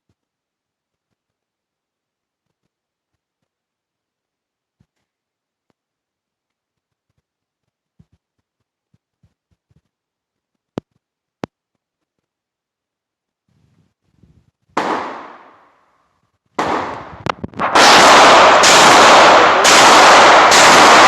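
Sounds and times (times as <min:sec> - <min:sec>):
gunshots: 0:14.8 - 0:15.7, 0:16.6 - 0:21.0.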